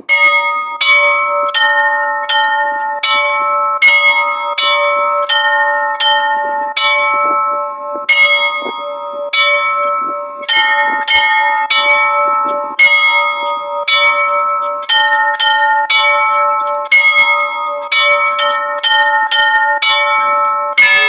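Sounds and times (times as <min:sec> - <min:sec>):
church bells pealing: 0:00.0 - 0:21.0
large bell humming: 0:00.0 - 0:21.0.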